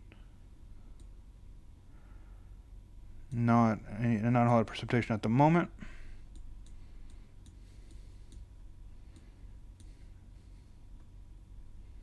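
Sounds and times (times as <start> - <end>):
low steady hum: 0.0 - 12.0
computer mouse clicks: 6.3 - 8.5.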